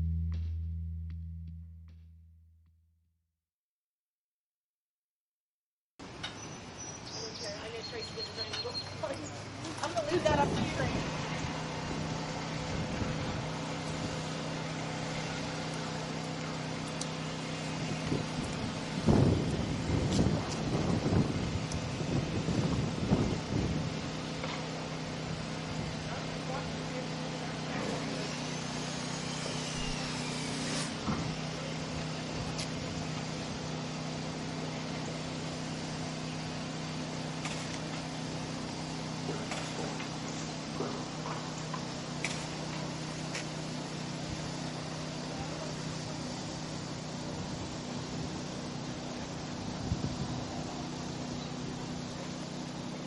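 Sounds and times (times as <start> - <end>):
vehicle engine humming: 0.0 - 2.3, 6.0 - 53.0
wind on microphone: 18.1 - 24.0.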